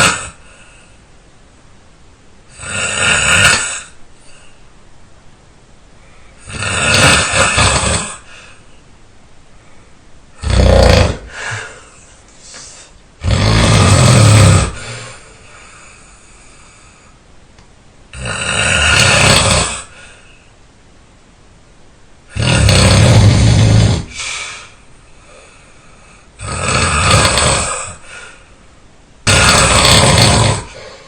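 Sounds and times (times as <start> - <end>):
person snoring loudly: 0.0 - 0.5, 2.5 - 4.5, 6.4 - 8.4, 10.4 - 11.9, 13.2 - 15.3, 18.1 - 20.2, 22.3 - 24.6, 26.4 - 28.2, 29.2 - 31.0.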